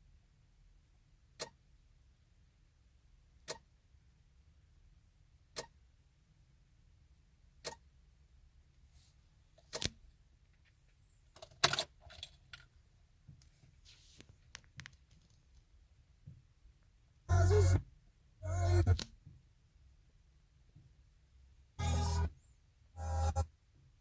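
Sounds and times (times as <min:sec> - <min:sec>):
faint small clicks and rattles: 0:09.6 - 0:15.8.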